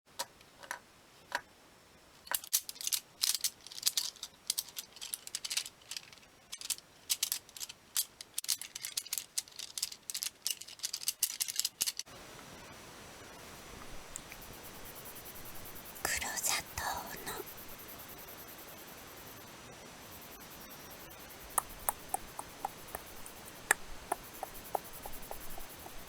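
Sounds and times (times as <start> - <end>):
dry rattling and crackling: 2.3 - 12.1
isolated clicks: 21.5 - 26.0.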